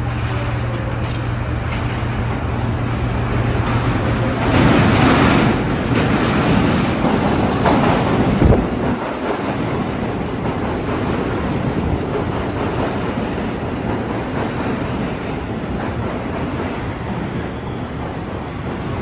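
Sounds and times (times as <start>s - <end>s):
train rumble: 0.0s - 19.0s
train wheels clacking over rail joints: 3.6s - 18.2s.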